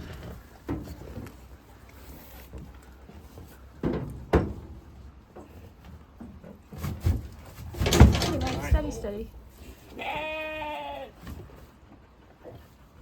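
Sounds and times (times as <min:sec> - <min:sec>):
animal knocking in trailer: 0:07.0 - 0:09.0.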